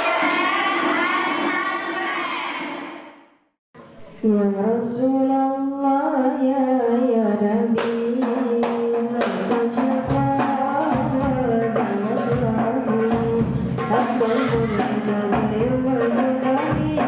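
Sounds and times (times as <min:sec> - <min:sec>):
hand frame drums: 0:07.8 - 0:17.0
deep bass drum beats: 0:09.5 - 0:16.0.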